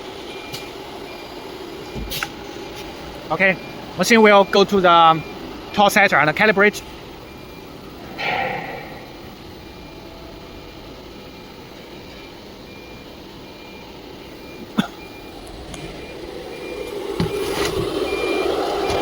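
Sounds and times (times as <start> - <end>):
soft high beep: 7.3 - 19.0.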